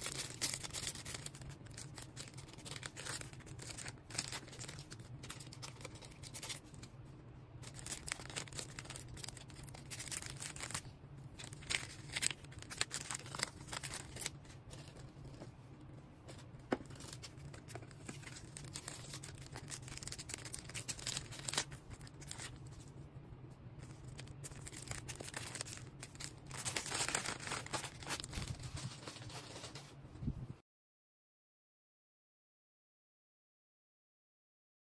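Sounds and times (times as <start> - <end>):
packaging crinkling and tearing: 0.0 - 6.9, 7.6 - 15.4, 16.3 - 22.9, 23.8 - 30.0
steady low hum: 0.0 - 30.6.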